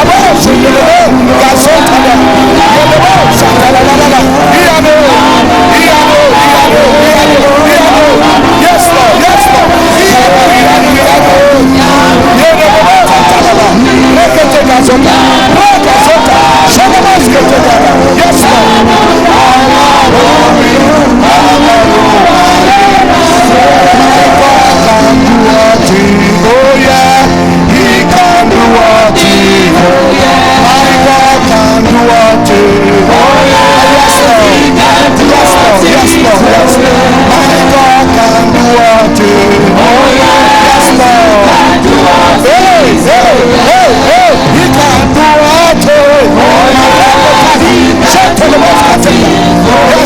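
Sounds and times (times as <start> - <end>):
church worship music: 0.0 - 50.0
person singing: 0.0 - 50.0.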